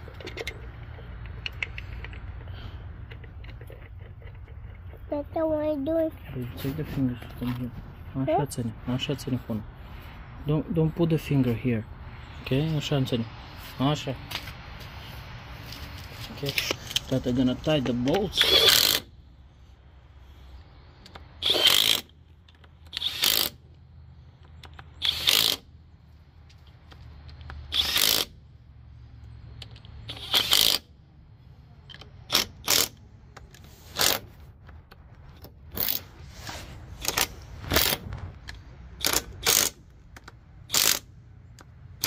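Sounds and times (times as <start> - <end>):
ratchet wrench ratcheting: 0.0 - 5.0, 18.0 - 19.1, 21.1 - 23.7, 24.6 - 25.7, 27.3 - 28.4, 29.6 - 30.9, 31.9 - 33.0, 33.9 - 34.3, 35.7 - 36.1, 37.0 - 38.0, 38.9 - 42.0.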